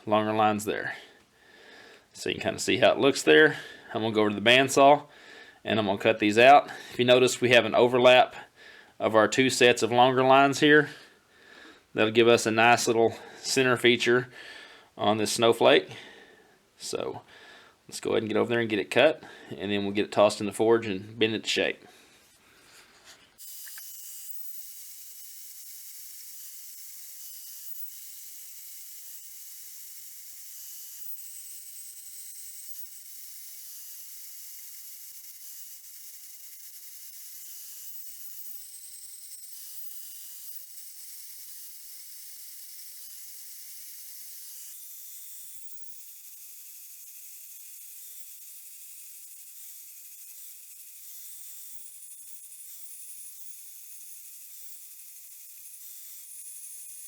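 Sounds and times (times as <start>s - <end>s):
bandsaw cutting steel: 23.4s - 57.0s.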